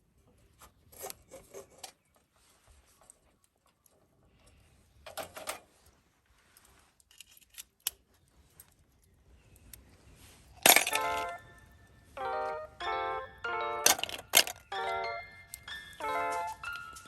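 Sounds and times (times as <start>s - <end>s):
clinks and rustling handling: 0.3s - 11.7s, 13.8s - 17.0s
background music: 10.7s - 17.0s
short chime jingle: 11.0s - 17.0s.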